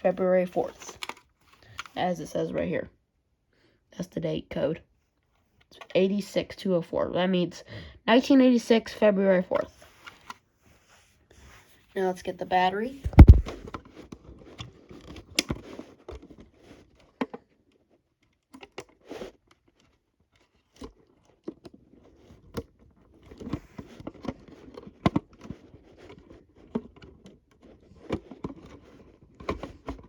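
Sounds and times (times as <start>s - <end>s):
light rustling of plastic: 0.0s - 2.2s, 9.5s - 30.0s.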